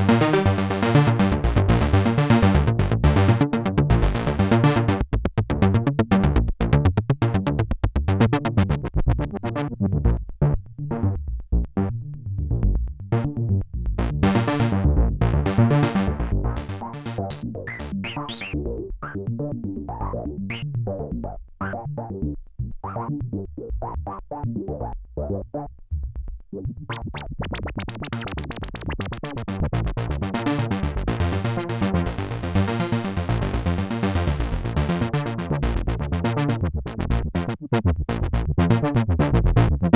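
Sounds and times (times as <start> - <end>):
pulsing bass notes: 0.0 - 39.9
synthesizer arpeggio: 12.4 - 22.2.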